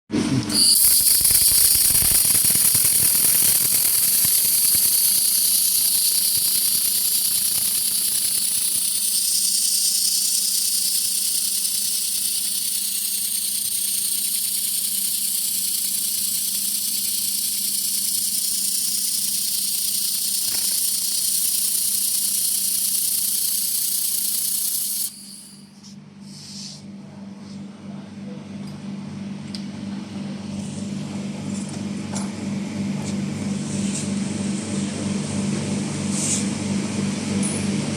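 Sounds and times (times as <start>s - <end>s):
laser welding hiss: 0.6s - 25.6s.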